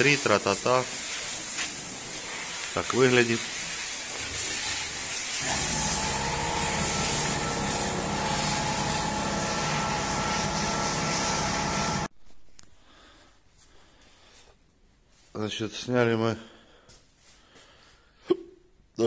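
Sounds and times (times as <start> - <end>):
constant hiss: 0.0 - 10.8
motor humming: 5.4 - 12.1.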